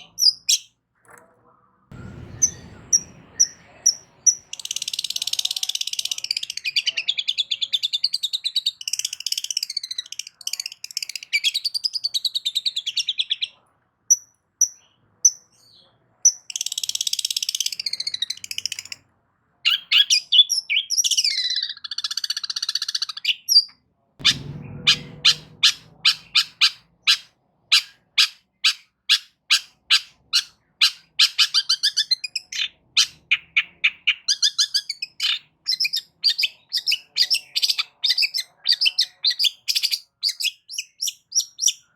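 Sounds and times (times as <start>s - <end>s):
bird singing harsh chattering: 0.0s - 0.8s, 1.9s - 19.0s, 19.7s - 41.9s
low thump: 24.2s - 26.8s.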